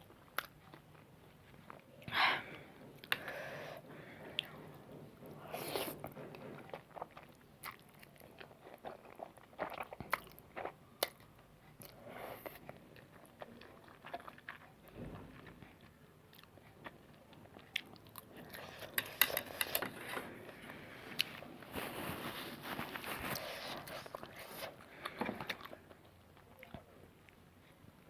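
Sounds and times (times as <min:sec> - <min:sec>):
person chewing noodles: 0:05.3 - 0:26.8.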